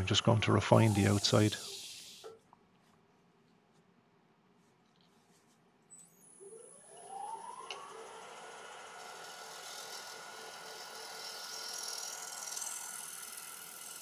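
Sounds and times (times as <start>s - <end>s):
scraper cutting wood hiss: 0.6s - 2.3s
wood lathe motor whine: 6.2s - 14.0s.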